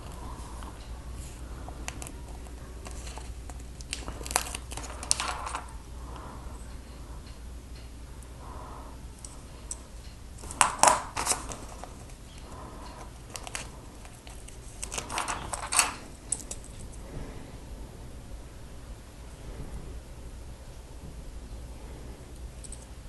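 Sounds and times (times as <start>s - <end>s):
sticker sheet crinkling: 0.0s - 5.7s, 10.4s - 16.6s
faint low hum: 0.0s - 23.0s.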